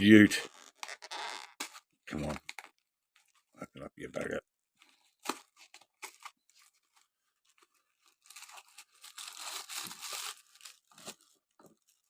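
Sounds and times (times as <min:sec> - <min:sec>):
packaging crinkling: 0:05.2 - 0:12.0.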